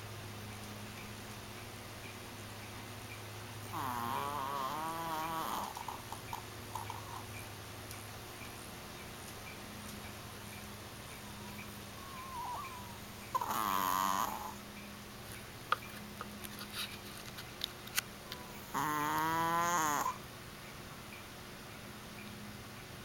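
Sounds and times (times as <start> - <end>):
dog snoring: 3.6 - 6.0, 11.5 - 14.6, 18.4 - 20.2.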